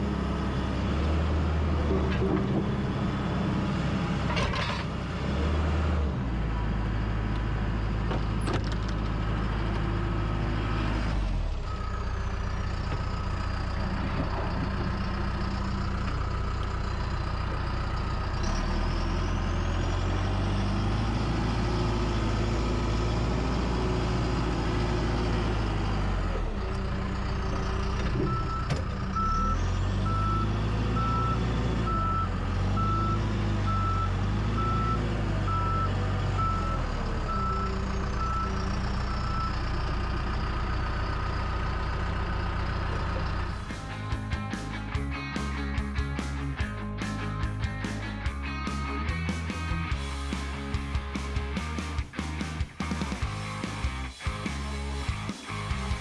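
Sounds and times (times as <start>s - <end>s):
diesel engine working: 0.0s - 56.0s
reversing alarm beeping: 28.3s - 38.6s.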